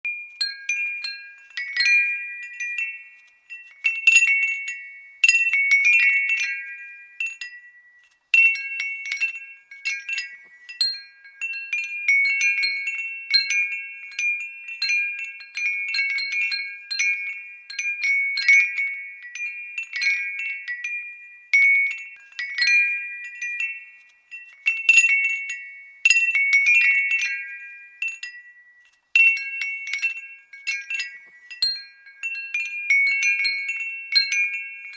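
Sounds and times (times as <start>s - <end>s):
glass wind chime tinkling: 0.0s - 34.9s.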